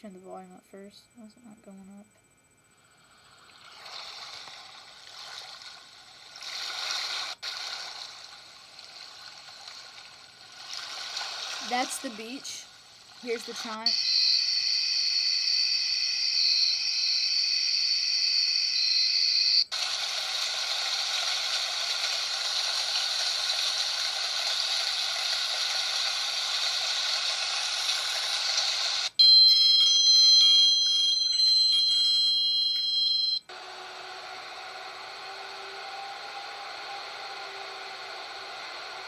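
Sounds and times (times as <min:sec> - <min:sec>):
steady high-pitched tone: 0:13.2 - 0:19.6
overlapping ringing tones: 0:29.2 - 0:33.5.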